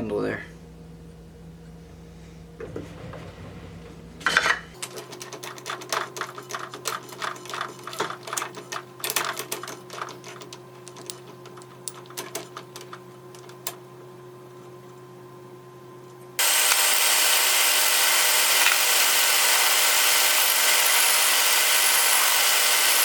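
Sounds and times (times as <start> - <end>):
metal lathe humming: 16.4 - 23.0.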